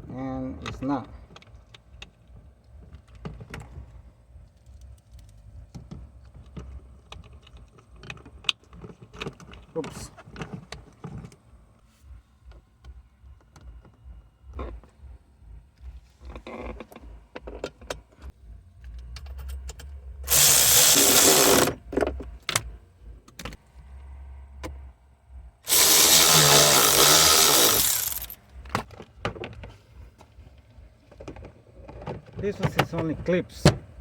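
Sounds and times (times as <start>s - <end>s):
power tool running: 20.3s - 21.8s, 25.7s - 28.4s.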